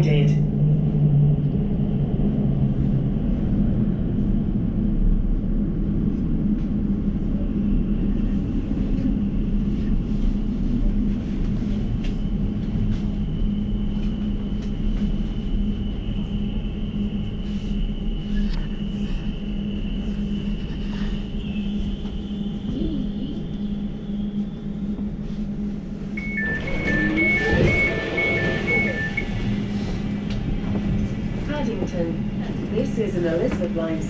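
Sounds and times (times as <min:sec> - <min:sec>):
train interior rumble and hum: 0:00.0 - 0:34.0
high-pitched whine: 0:06.8 - 0:33.1.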